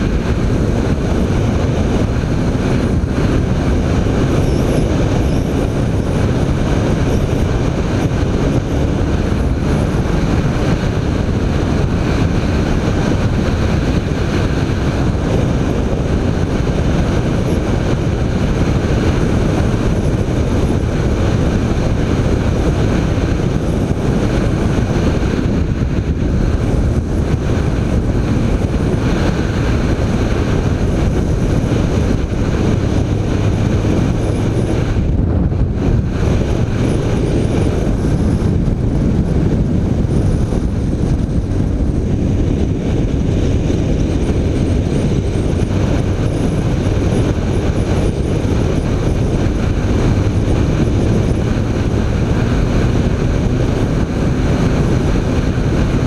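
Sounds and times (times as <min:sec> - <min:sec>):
motorcycle engine running: 0:00.0 - 0:56.0
wind noise on microphone: 0:00.0 - 0:56.0.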